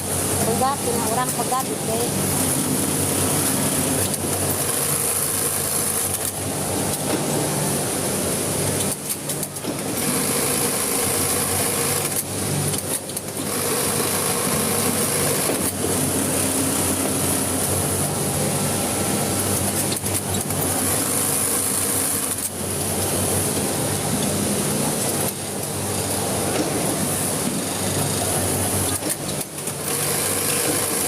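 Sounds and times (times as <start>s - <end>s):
electric sewing machine running: 2.1s - 6.5s, 9.8s - 18.2s, 19.4s - 23.5s, 27.8s - 31.0s.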